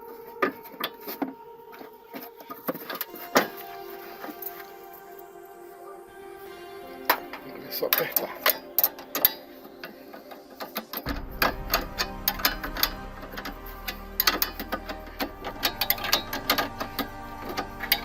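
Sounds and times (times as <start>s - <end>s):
low steady hum: 2.8s - 18.0s.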